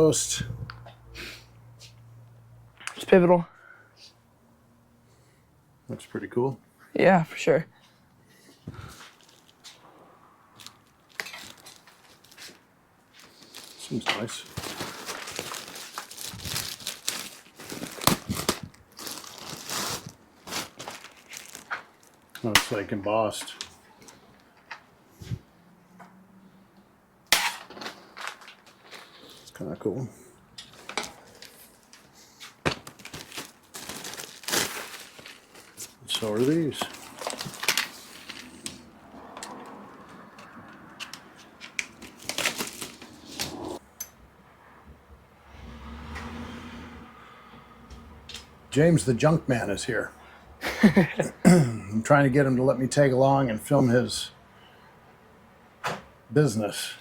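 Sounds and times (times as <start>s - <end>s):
packing material crinkling: 10.6s - 12.6s, 13.2s - 22.3s, 32.8s - 38.6s, 41.8s - 43.6s.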